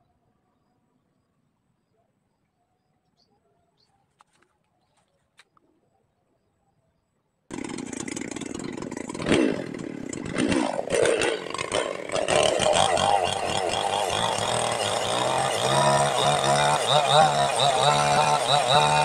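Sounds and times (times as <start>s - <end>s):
chainsaw revving: 7.5s - 19.0s.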